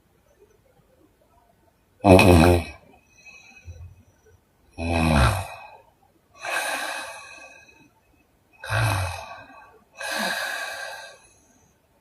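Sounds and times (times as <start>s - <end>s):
woman snoring: 4.8s - 5.6s, 8.6s - 11.2s.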